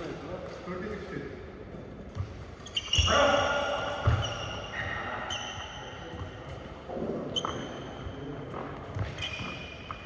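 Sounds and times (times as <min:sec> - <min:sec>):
shoe squeaks on court: 0:02.6 - 0:03.2, 0:07.4 - 0:07.8, 0:09.0 - 0:10.0.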